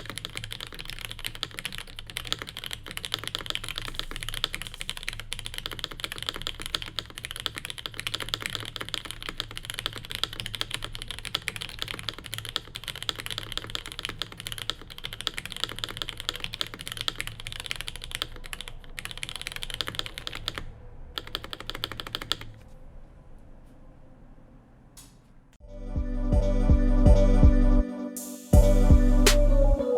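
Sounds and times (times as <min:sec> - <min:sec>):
fast mechanical keyboard typing: 0:00.0 - 0:22.6.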